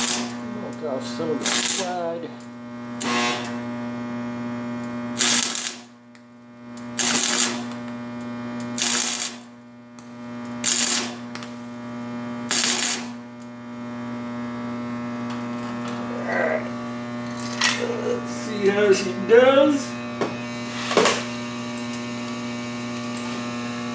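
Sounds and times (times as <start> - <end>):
steady electrical hum: 0.0 - 23.9
scraping slag off metal: 15.2 - 18.6.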